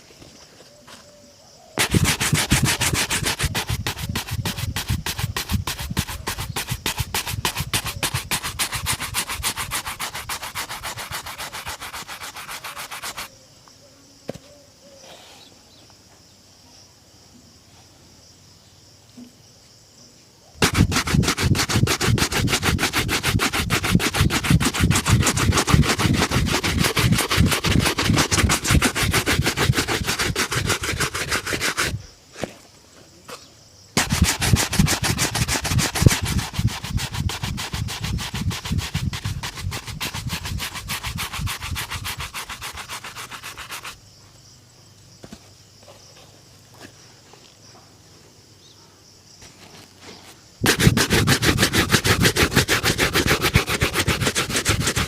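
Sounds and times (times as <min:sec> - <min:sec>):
shoe buffing rubbing strokes: 0:01.8 - 0:13.3, 0:20.6 - 0:32.0, 0:34.0 - 0:44.0, 0:49.4 - 0:55.0.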